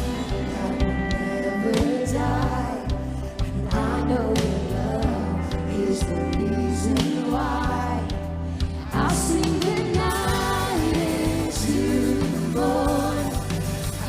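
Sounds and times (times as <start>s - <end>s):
band playing praise song: 0.0s - 14.0s
person singing lead vocal: 0.0s - 14.0s.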